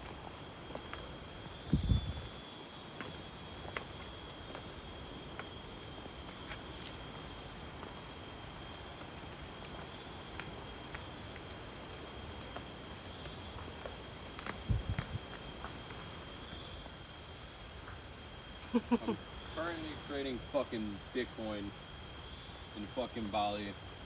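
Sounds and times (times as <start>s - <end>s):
high-pitched insect drone: 0.0s - 24.0s.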